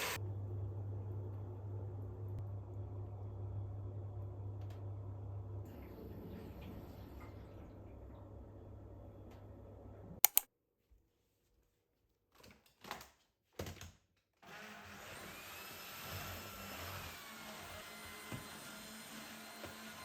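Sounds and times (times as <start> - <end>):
sharp clicks: 10.2 - 10.5.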